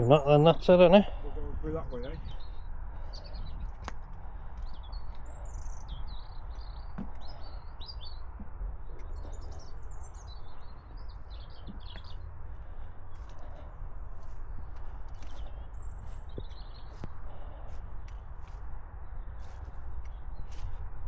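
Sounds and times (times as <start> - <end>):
songbirds chirping: 0.0 - 21.0.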